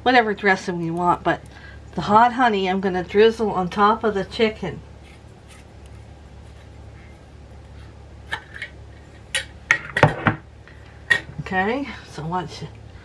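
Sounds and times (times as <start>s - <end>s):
steady low hum: 0.0s - 13.0s
dishes and containers knocking: 9.7s - 10.4s.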